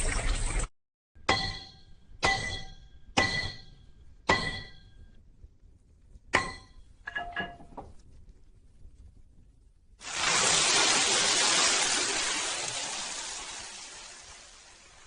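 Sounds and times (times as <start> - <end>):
hammer striking anvil: 1.2 - 5.0, 6.3 - 7.7.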